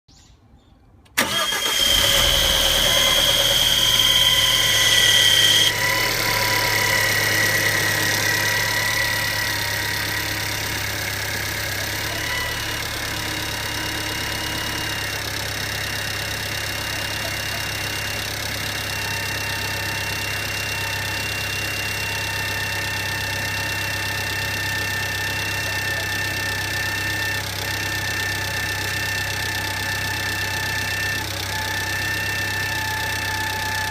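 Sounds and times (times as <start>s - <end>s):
car engine starting and idling: 1.0s - 33.9s
high-pitched whining tones: 2.8s - 10.8s
loud high whistle: 3.3s - 6.0s.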